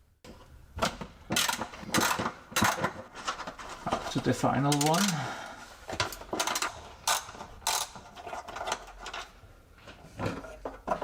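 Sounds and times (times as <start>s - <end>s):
hand ratchet clicking: 6.4s - 8.0s.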